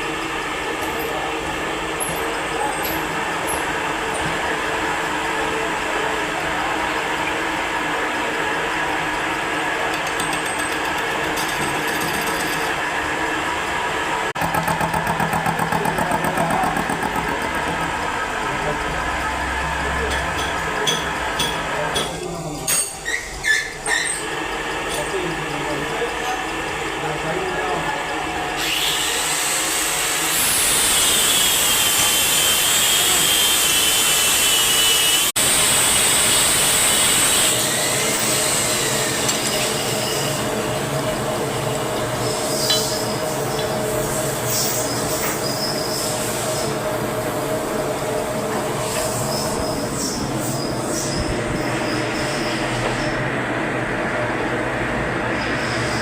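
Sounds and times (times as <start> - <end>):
lathe humming: 12.2 - 20.0
fast even pulsing: 14.4 - 19.2.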